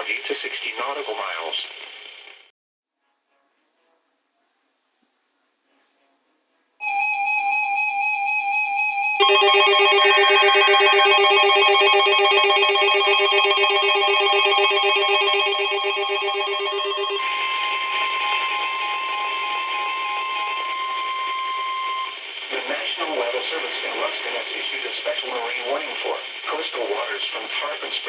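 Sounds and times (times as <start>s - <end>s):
steady high tone: 8.7s - 23.5s
electronic tones in a chord: 9.2s - 22.4s.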